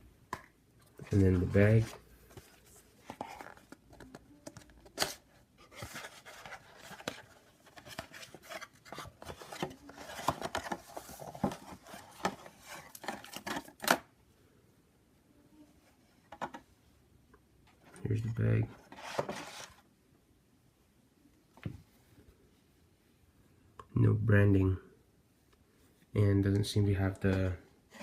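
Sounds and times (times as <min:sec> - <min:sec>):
packaging rustling and scraping: 0:00.9 - 0:13.9, 0:18.8 - 0:19.8.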